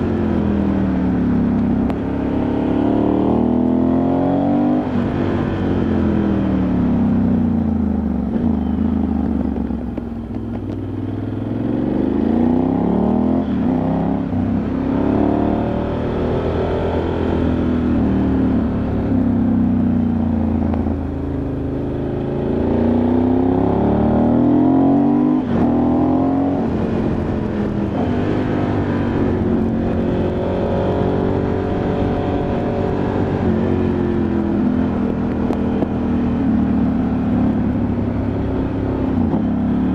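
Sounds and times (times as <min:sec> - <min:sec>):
motorcycle engine revving: 0:00.0 - 0:39.9
wind rushing over microphone: 0:22.6 - 0:36.6.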